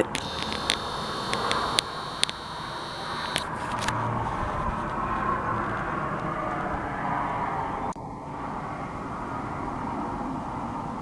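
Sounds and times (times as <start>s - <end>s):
sharp clicks: 0.0s - 6.7s
thin high whine: 0.0s - 6.7s
distant road traffic hum: 0.0s - 11.0s.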